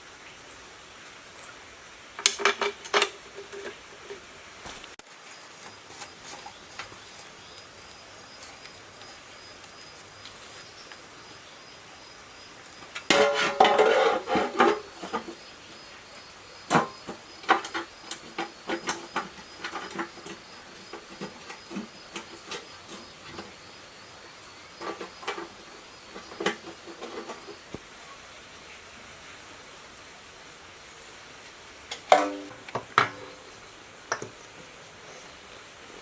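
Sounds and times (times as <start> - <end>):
hard objects clattering: 13.0 - 15.4, 24.8 - 27.8, 31.9 - 33.4.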